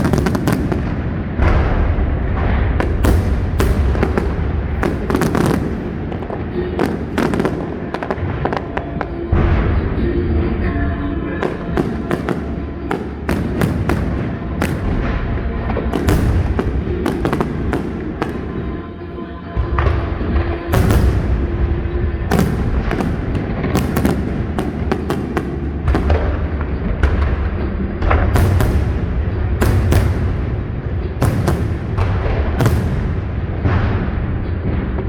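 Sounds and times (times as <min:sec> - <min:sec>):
fireworks bursting: 0:00.0 - 0:10.1, 0:11.0 - 0:34.8
deep rumble: 0:00.0 - 0:18.8
music playing: 0:00.0 - 0:35.0.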